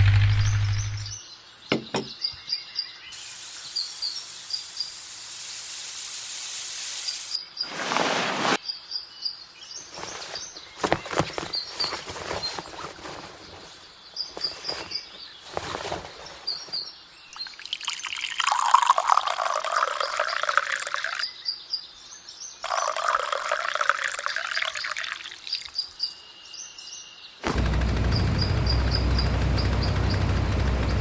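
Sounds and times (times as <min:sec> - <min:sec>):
liquid being poured: 0:17.3 - 0:21.3, 0:22.6 - 0:26.6
small birds chirping: 0:22.7 - 0:30.6.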